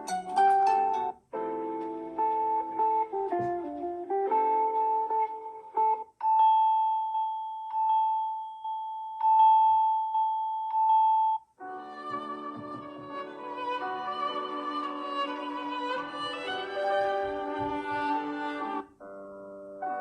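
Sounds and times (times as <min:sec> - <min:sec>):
melodic ringtone: 0:00.0 - 0:01.6, 0:05.1 - 0:18.9
single-note ringtone: 0:06.2 - 0:18.6.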